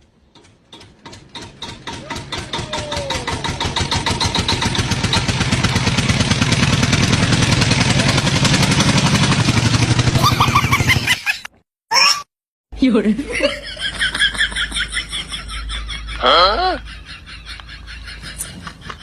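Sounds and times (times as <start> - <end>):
small engine starting and running: 0.3 - 11.4.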